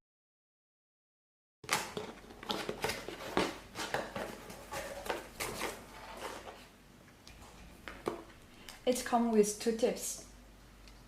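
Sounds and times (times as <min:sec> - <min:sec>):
packaging clicks and rustles: 0:01.7 - 0:06.6.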